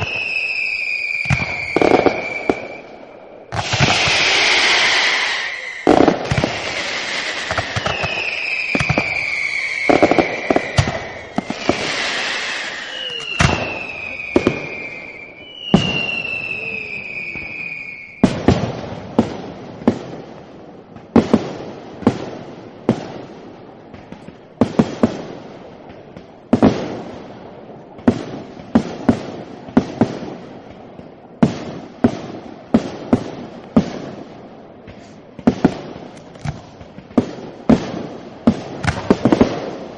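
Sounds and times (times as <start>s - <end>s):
fireworks whistles falling in pitch: 0.0s - 19.4s
fireworks bangs: 0.0s - 39.9s
fireworks crackles: 0.0s - 39.9s.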